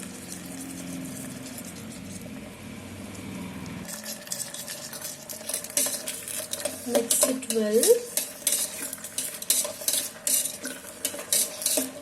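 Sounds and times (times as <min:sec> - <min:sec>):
spoon scraping a pot: 0:00.0 - 0:02.3, 0:03.8 - 0:12.0
vegetables sizzling: 0:03.8 - 0:12.0.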